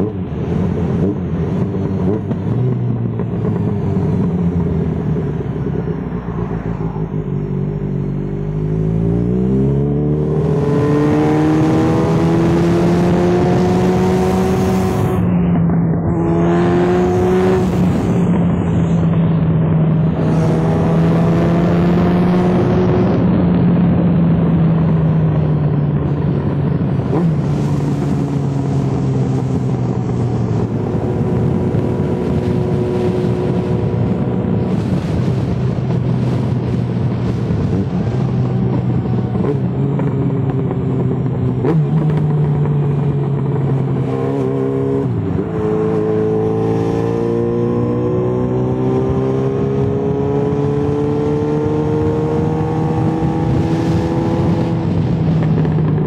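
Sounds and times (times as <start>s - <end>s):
motorcycle engine running: 48.0s - 56.0s.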